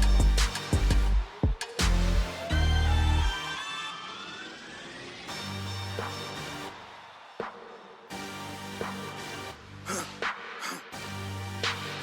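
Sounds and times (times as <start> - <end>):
held bass notes: 0.0 - 1.2
hip-hop instrumental music: 0.0 - 12.0.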